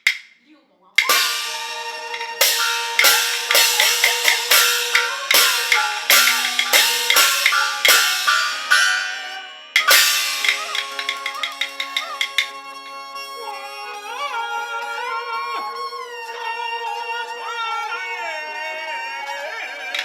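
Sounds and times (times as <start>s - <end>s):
wooden clappers: 0.0s - 0.3s, 1.0s - 12.8s, 19.8s - 20.0s
drum and cymbals striking: 1.0s - 12.8s
sustained melodic instrument: 1.0s - 20.0s.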